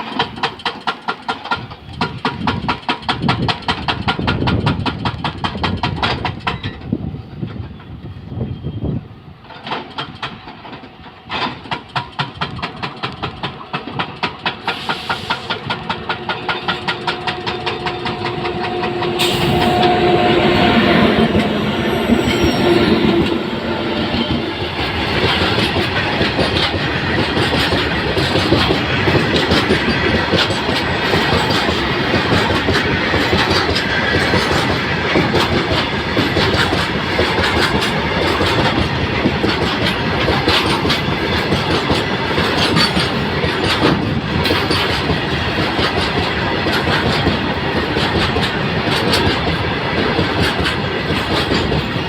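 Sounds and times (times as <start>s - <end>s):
train wheels clattering on rails: 0.0s - 8.2s, 9.3s - 52.0s.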